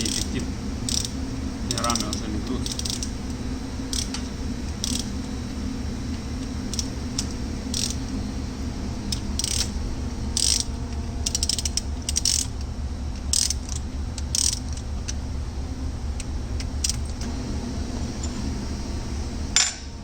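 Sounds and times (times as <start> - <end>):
ratchet wrench clicking: 0.0 - 3.2, 3.9 - 4.2, 4.8 - 5.1, 6.7 - 8.0, 9.1 - 9.8, 10.4 - 15.2, 16.2 - 17.2
steady low hum: 0.0 - 20.0.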